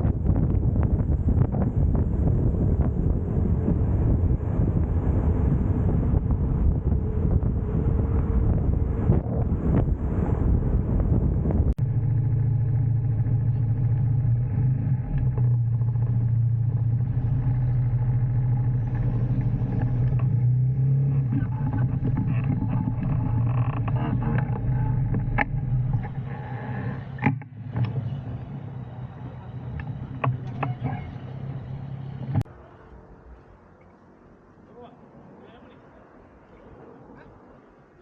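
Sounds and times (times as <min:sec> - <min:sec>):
wind buffeting microphone: 0:00.0 - 0:11.8
motorcycle engine idling: 0:11.8 - 0:14.5.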